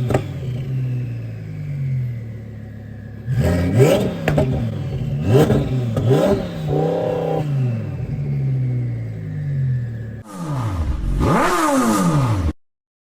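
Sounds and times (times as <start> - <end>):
car engine revving: 0.0 - 12.6.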